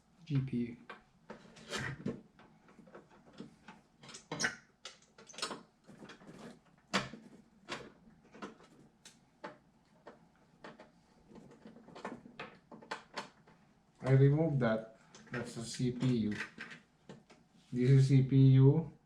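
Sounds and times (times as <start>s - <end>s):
computer parts clicking and knocking: 9.4s - 14.2s.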